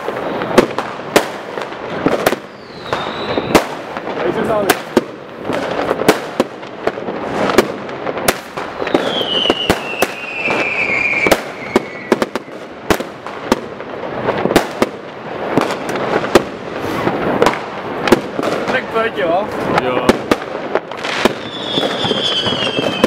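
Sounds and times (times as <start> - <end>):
firecracker and shell bangs: 0.0 - 23.0
firework whistle sliding down: 2.6 - 3.6, 8.9 - 12.2, 21.4 - 23.0.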